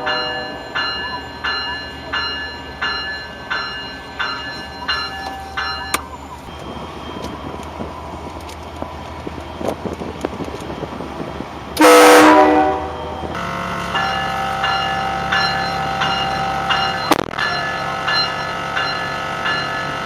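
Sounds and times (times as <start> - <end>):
bell ringing: 0.0 - 7.8, 12.9 - 20.0
locomotive air horn blast: 11.8 - 13.0.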